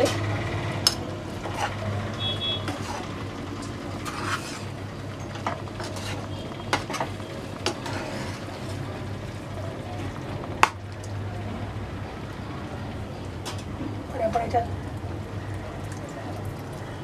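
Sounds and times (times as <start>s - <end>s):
spoon scraping metal pan: 2.6s - 3.2s, 4.0s - 4.8s, 5.5s - 8.6s.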